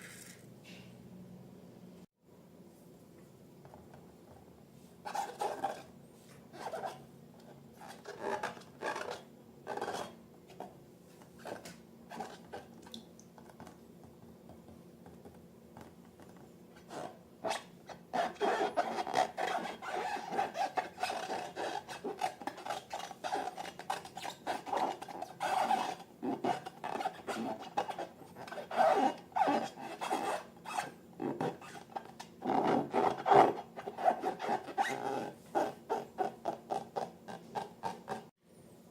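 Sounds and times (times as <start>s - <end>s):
rubbing and scraping rubber balloons: 5.0s - 5.9s, 7.8s - 10.7s, 16.8s - 38.3s.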